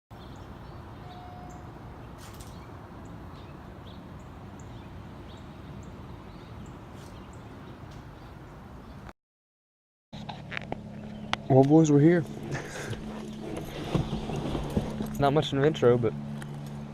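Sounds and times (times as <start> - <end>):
high bird chirps: 0.2 - 4.0.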